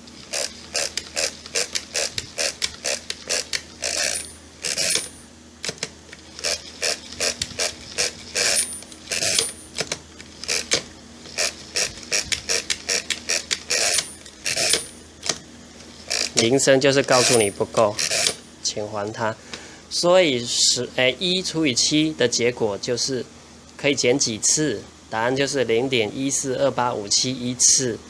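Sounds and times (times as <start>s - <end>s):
crank clicks and gear clatter: 0.0s - 15.4s, 16.1s - 16.5s, 17.1s - 18.4s.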